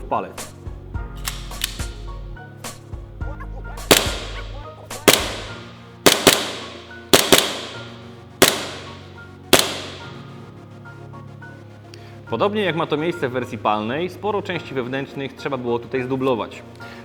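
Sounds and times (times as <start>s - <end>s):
background music: 0.0s - 17.0s
sharp ringing bangs: 3.9s - 10.3s.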